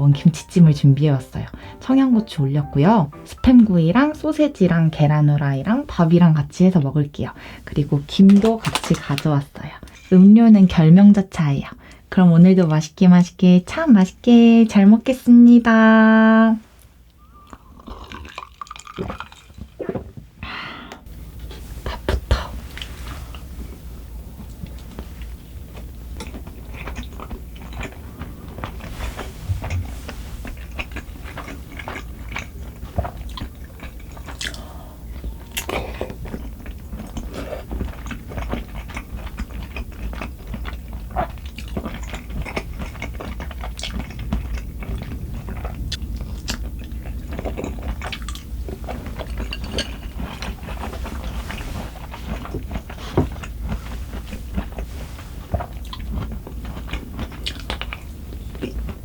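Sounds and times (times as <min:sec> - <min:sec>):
person chewing food: 0:17.1 - 0:19.8, 0:22.8 - 0:59.0
wet mouth clicks and smacks: 0:57.4 - 0:58.0.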